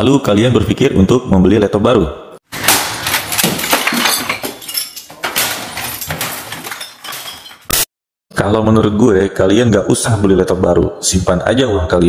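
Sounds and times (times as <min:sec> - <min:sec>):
glass clinking and breaking: 0:02.6 - 0:07.9.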